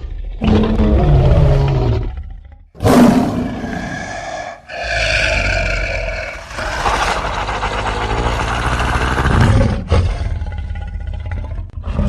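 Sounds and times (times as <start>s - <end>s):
monster roar: 2.8s - 12.0s.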